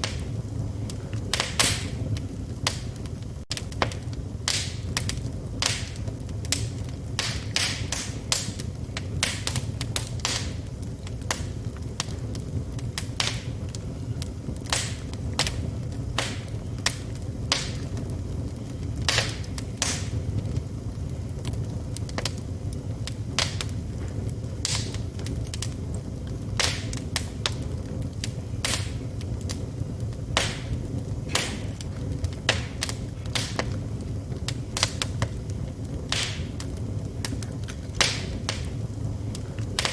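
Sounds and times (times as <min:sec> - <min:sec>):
low rumble of burning fire: 0:00.0 - 0:39.9
wood fire crackling and popping: 0:00.0 - 0:39.9.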